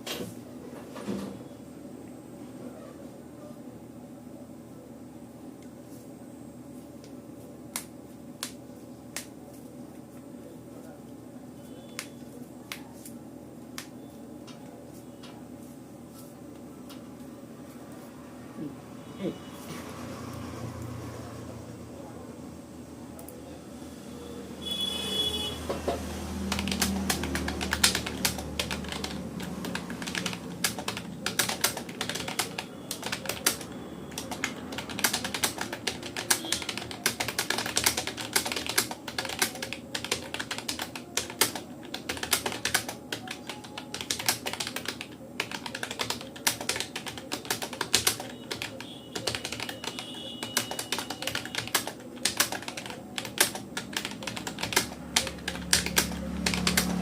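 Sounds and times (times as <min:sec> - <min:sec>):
fast typing on keyboard: 0:26.4 - 0:57.0.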